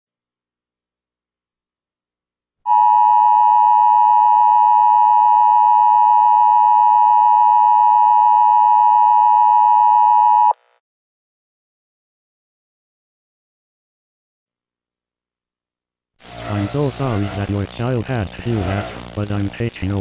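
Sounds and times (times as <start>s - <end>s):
two-tone alarm: 2.7s - 10.6s, 16.2s - 19.2s.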